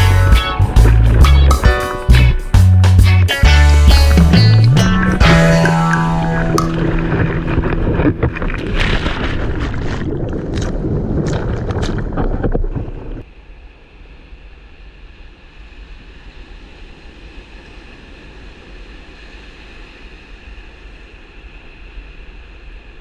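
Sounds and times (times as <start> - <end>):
water splashing over microphone: 4.0 - 13.2
wind buffeting microphone: 4.7 - 13.3.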